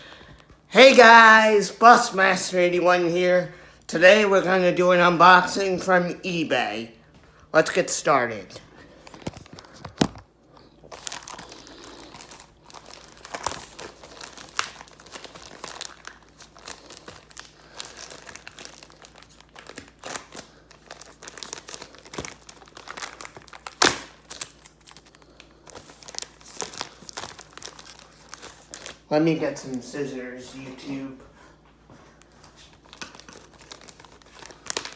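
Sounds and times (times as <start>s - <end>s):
packaging crinkling: 8.7s - 29.1s, 32.2s - 34.9s
packaging tearing: 10.9s - 29.0s, 32.8s - 34.9s.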